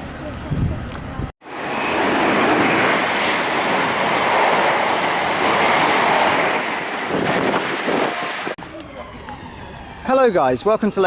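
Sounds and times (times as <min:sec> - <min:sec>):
train passing at speed: 0:01.4 - 0:08.6.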